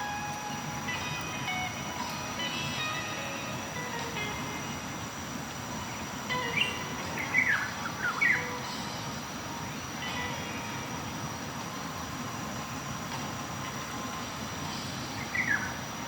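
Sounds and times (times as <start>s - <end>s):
waterfall rushing: 0.0s - 16.0s
bird chirping: 5.9s - 9.0s, 14.8s - 15.8s.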